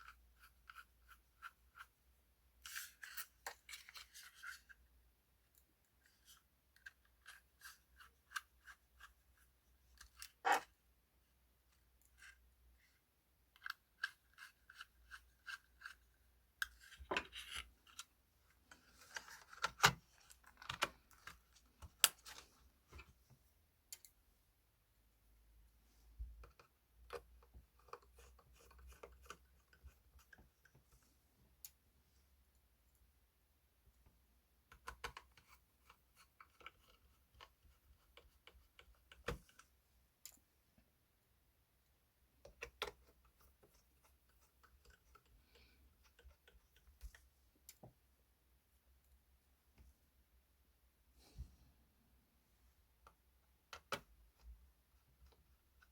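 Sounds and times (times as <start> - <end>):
laptop parts clicking and scraping: 13.5 - 23.1, 26.4 - 30.9, 42.4 - 47.9.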